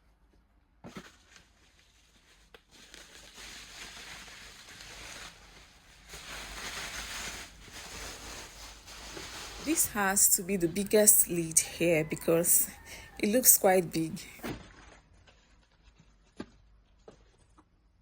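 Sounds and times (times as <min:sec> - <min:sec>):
wrapping rustling and crinkling: 0:00.8 - 0:14.4.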